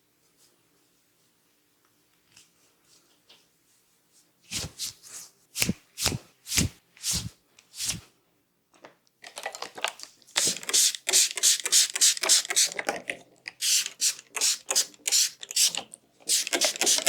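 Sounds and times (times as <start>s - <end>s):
hand strokes and pats: 4.1s - 8.1s
hands rubbing and tapping: 4.5s - 8.0s.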